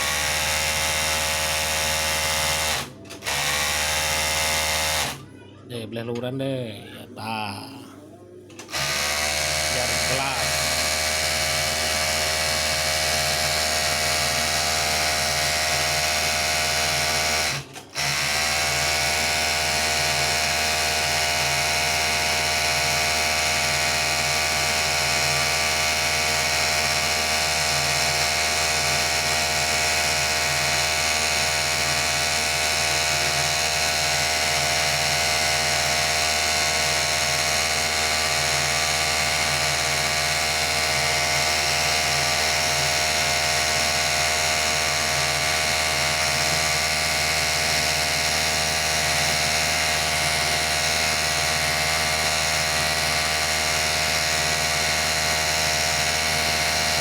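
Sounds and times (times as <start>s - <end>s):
overlock sewing machine running: 0.0s - 5.2s, 8.6s - 57.0s.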